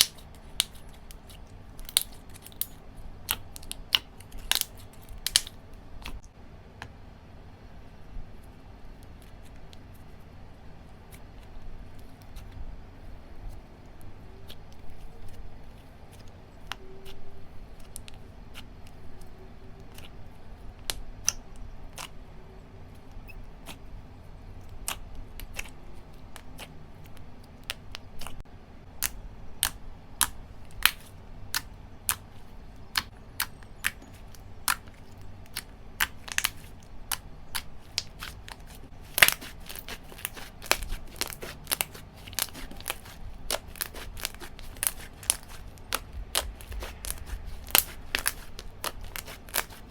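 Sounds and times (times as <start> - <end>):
slime popping and clicking: 35.4 - 49.8.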